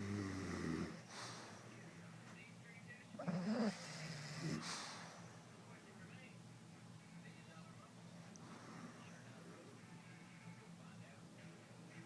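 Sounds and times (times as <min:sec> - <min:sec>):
dog snoring: 0:00.0 - 0:01.3, 0:03.2 - 0:05.2.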